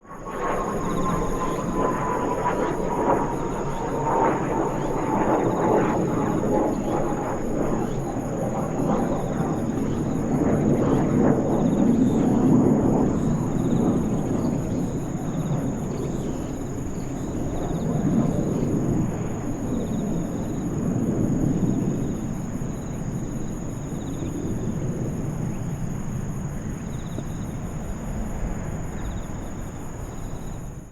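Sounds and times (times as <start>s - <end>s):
jet engine rumble overhead: 0.0s - 30.9s.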